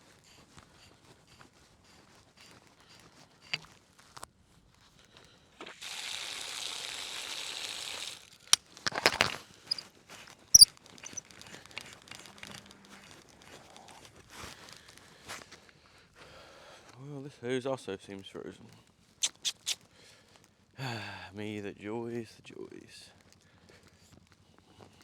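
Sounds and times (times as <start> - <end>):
water hissing into hose: 5.8 - 8.5
hose fittings knocking: 10.6 - 11.2.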